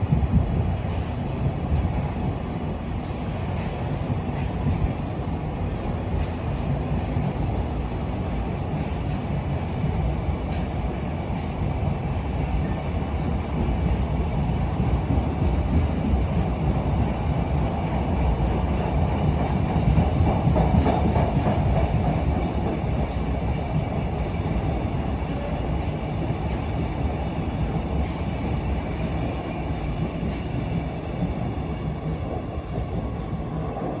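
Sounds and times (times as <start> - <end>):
freight train rumbling past: 0.0 - 34.0.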